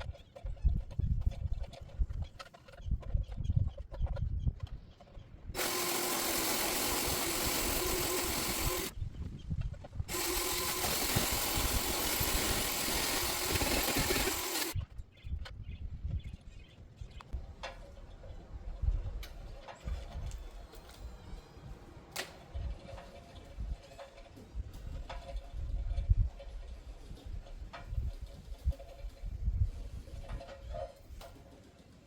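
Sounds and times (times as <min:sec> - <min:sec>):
wind rumble on microphone: 0:00.0 - 0:05.6, 0:08.9 - 0:10.1, 0:14.8 - 0:21.1, 0:22.5 - 0:31.3
motorized tool running: 0:05.6 - 0:09.0, 0:10.1 - 0:14.8.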